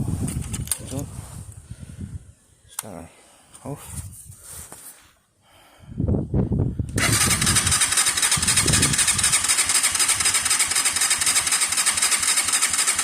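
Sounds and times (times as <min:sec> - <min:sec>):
motorcycle engine starting and running: 0:06.9 - 0:13.0.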